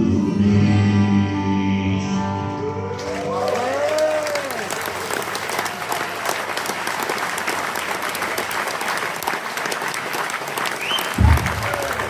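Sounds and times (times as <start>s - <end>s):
audience applauding: 3.0s - 12.0s.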